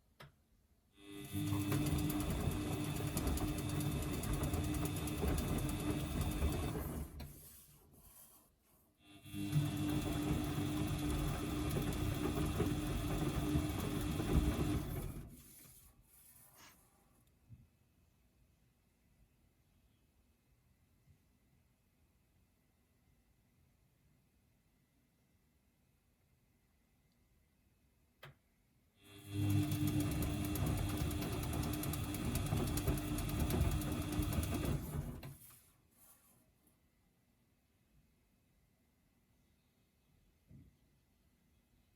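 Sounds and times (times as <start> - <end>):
washing machine motor humming: 1.0 - 7.6, 9.2 - 15.5, 29.1 - 35.5.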